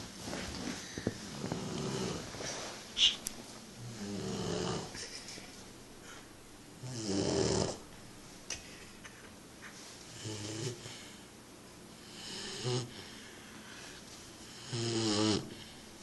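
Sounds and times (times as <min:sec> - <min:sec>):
puppy snoring: 0:01.2 - 0:02.4, 0:03.8 - 0:05.0, 0:06.8 - 0:07.8, 0:10.1 - 0:11.0, 0:12.0 - 0:13.1, 0:14.5 - 0:15.7.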